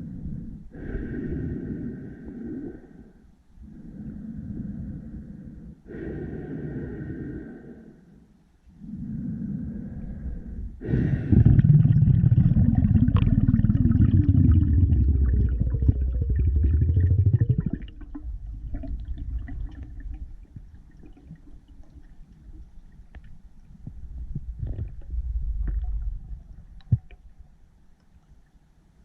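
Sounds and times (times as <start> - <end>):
underwater pulsing rumble: 8.9 - 27.9
faint clicks: 21.8 - 24.0.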